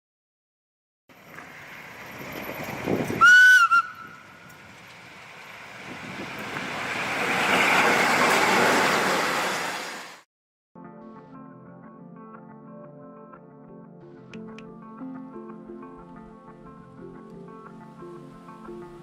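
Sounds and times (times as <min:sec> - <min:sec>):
train rumble passing: 0:01.2 - 0:10.2.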